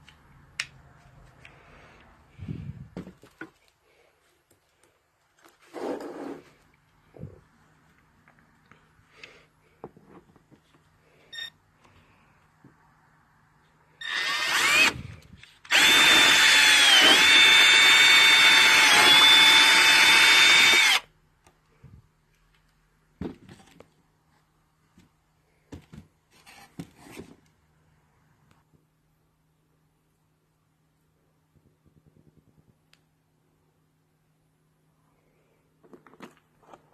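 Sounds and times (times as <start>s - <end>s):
electric power drill whine: 14.0s - 21.1s.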